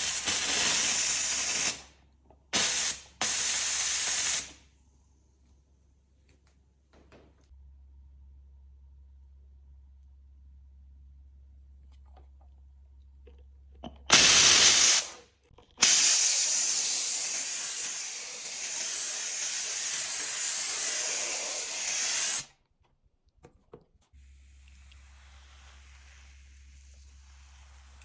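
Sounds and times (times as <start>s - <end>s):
steam cleaner hissing: 0.0s - 1.9s, 2.5s - 4.6s, 14.1s - 15.2s, 15.8s - 22.5s, 24.3s - 28.0s.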